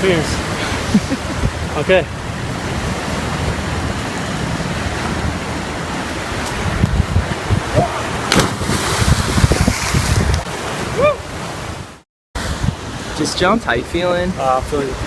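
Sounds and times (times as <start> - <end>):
rushing water: 0.0 - 15.0
wind: 0.0 - 15.0
wind buffeting microphone: 0.4 - 11.8
sharp crack: 8.3 - 9.1.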